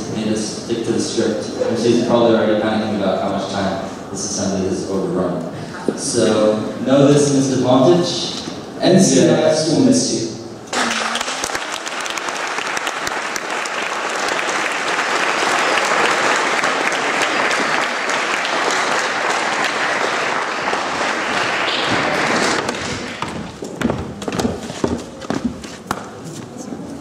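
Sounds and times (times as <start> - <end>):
audience clapping and cheering: 10.7 - 24.5
knocks and thumps: 21.9 - 25.6.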